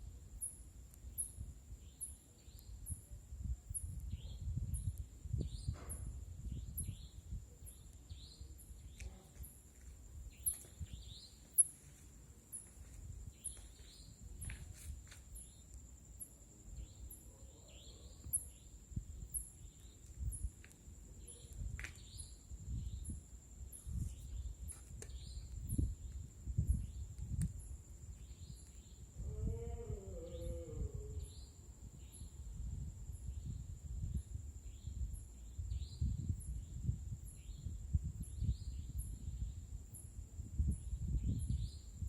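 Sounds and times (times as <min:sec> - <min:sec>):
wavering animal call: 0:29.2 - 0:31.2.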